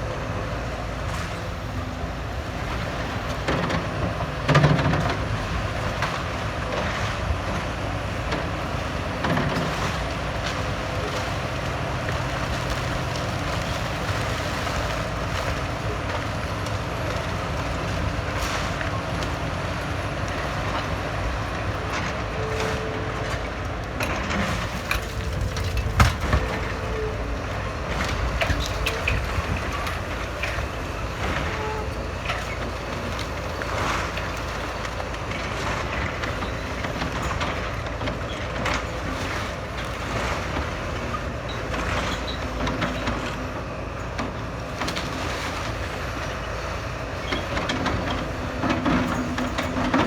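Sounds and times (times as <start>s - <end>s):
heavy demolition machinery running: 0.0s - 50.0s
debris knocks and crunches: 24.0s - 26.9s.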